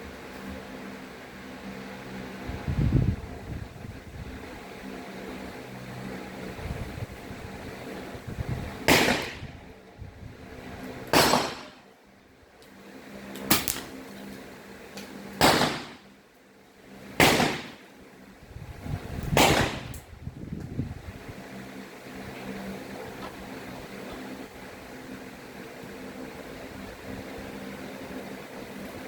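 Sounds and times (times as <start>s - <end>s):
air rifle shots: 8.8s - 9.7s, 11.0s - 11.9s, 15.4s - 16.1s, 17.2s - 17.9s, 19.3s - 20.1s.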